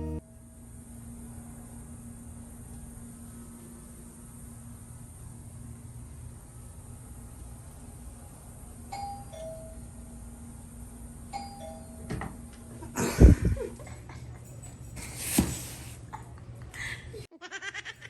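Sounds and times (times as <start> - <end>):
two-note doorbell chime: 8.9 - 10.0, 11.3 - 12.2.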